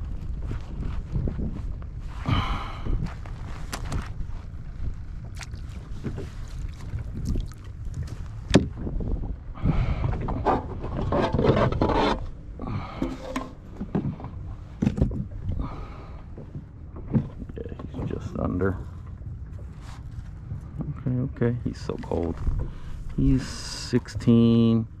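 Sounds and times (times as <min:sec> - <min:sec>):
wind rumble on microphone: 0:00.0 - 0:25.0
water splashing: 0:05.3 - 0:08.5.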